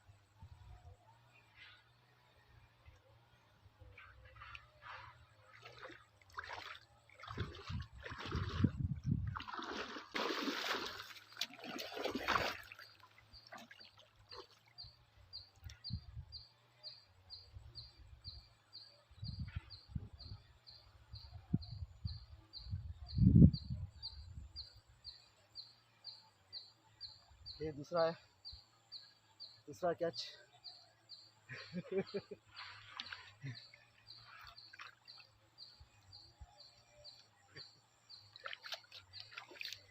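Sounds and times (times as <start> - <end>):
water splashing and sloshing: 4.0 - 14.9, 32.5 - 35.8, 38.2 - 39.9.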